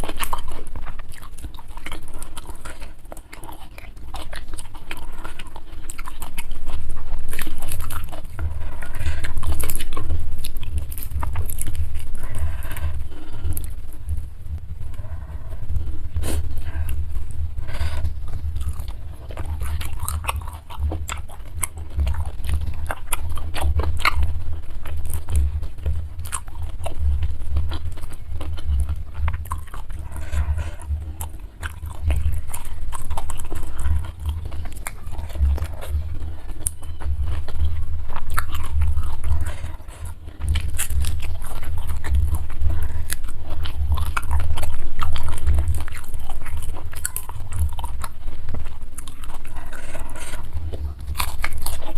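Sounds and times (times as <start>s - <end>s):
low chewing thumps: 0.0s - 51.9s
crisp food crunches: 16.2s - 51.9s.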